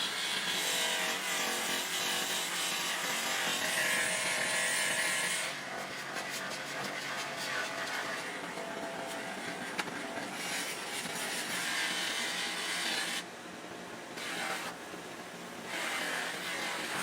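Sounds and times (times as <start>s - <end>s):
blade grinding rasp: 0.0s - 13.2s, 14.2s - 14.8s, 15.7s - 17.0s
power tool motor hum: 14.2s - 14.8s, 15.6s - 17.0s.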